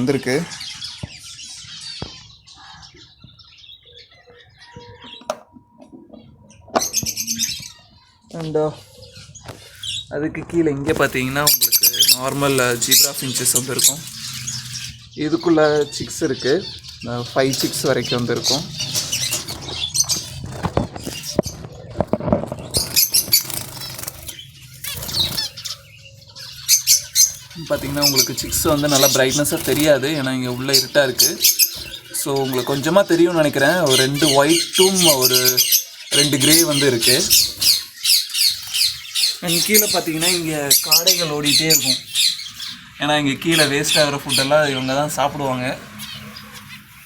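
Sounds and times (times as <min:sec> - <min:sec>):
cage birds chirping: 0:00.0 - 0:47.0
wings fluttering: 0:10.9 - 0:15.0, 0:16.6 - 0:33.0.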